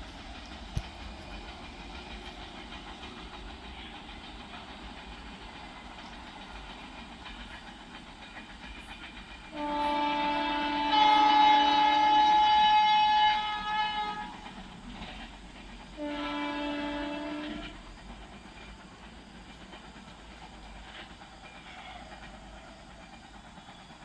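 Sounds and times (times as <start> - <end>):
locomotive running noise: 0.0 - 24.0
locomotive horn blasts: 9.5 - 14.4, 16.0 - 17.8.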